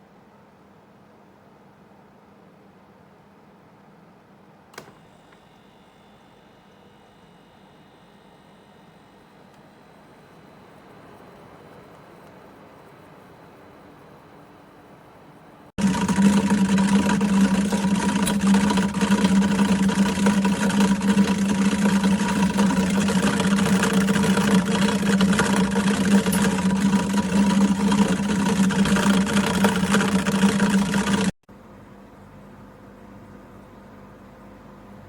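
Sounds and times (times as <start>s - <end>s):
compressor hum: 15.6s - 35.0s.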